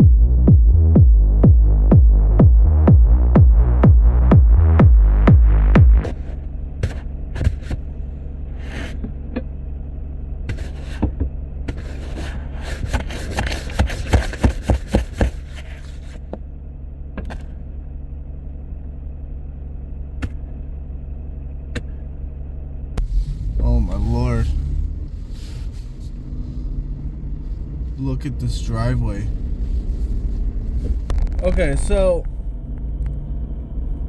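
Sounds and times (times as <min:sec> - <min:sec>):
electronic music: 0:00.0 - 0:06.1
vehicle engine idling: 0:00.0 - 0:34.0
handling clicks and scrapes: 0:06.0 - 0:09.5, 0:10.5 - 0:16.4.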